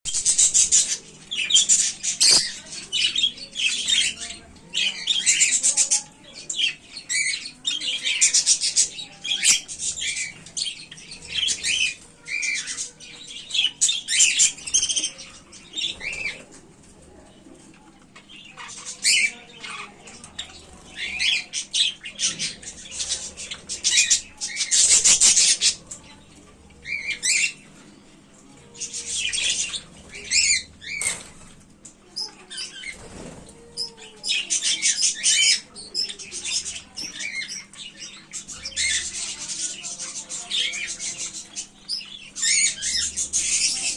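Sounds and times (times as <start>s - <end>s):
bird chicks calling: 18.2s - 28.0s, 28.7s - 43.9s.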